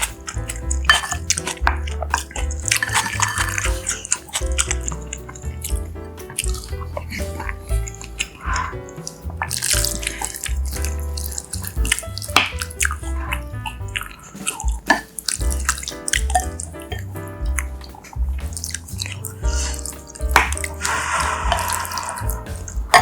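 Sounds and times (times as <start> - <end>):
background music with pulsing bass: 15.4 - 23.0.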